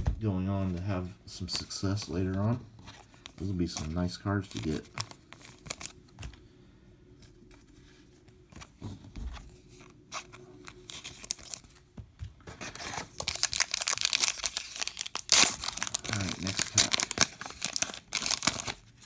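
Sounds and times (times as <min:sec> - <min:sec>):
cards clicking and rustling: 0:01.5 - 0:06.4, 0:12.5 - 0:18.9
wrapper crinkling and tearing: 0:03.2 - 0:06.0, 0:10.6 - 0:11.7, 0:12.7 - 0:19.0.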